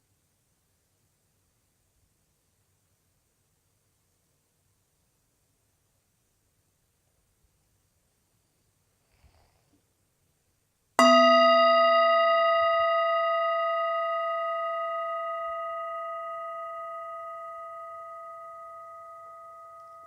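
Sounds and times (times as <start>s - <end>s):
meditation bell ringing: 11.0s - 20.0s.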